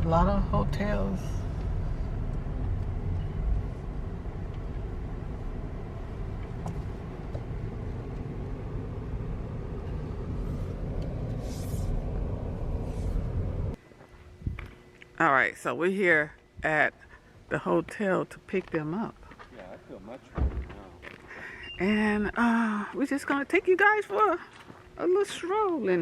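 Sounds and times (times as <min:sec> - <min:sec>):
car road and engine rumble: 0:00.0 - 0:13.8.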